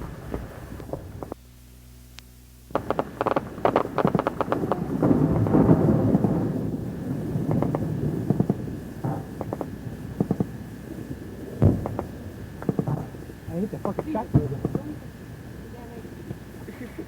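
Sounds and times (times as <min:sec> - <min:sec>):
rolling rumble: 0:00.0 - 0:01.4, 0:02.6 - 0:17.0
gunshots: 0:02.7 - 0:06.6, 0:07.5 - 0:10.6.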